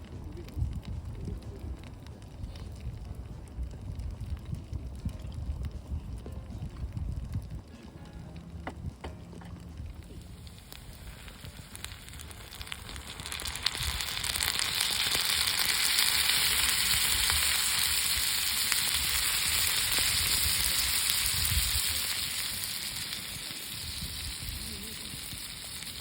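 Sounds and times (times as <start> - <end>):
pops and crackles: 0.0 - 26.0
food sizzling in a pan: 10.1 - 26.0.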